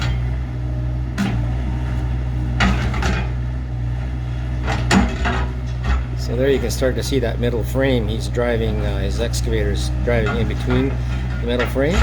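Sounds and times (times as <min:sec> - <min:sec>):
excavator diesel engine running: 0:00.0 - 0:12.0
debris crunching and banging: 0:01.2 - 0:03.4, 0:04.6 - 0:06.3, 0:10.1 - 0:12.0.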